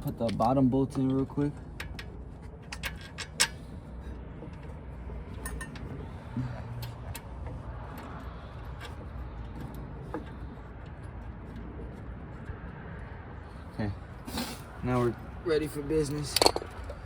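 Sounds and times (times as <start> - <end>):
metal hardware clinking: 1.8 - 3.8, 4.4 - 5.9, 16.1 - 17.0.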